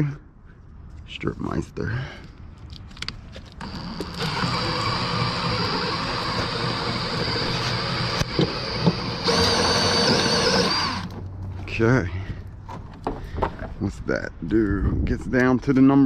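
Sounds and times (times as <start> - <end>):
wire stripping machine whining: 3.6 - 11.2.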